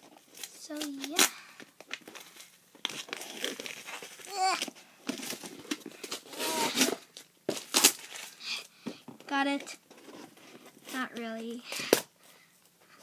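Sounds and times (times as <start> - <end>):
tape and cardboard ripping: 2.8 - 8.4.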